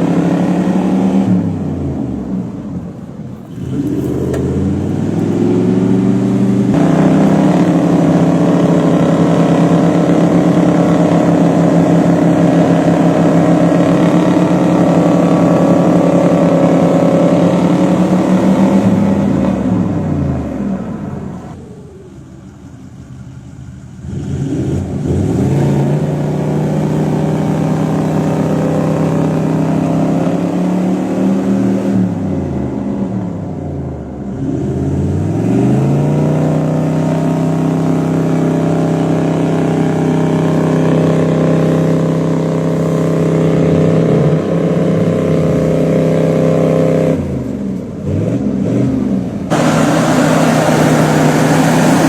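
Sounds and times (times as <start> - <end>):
engine revving under heavy throttle: 0.0 - 52.0.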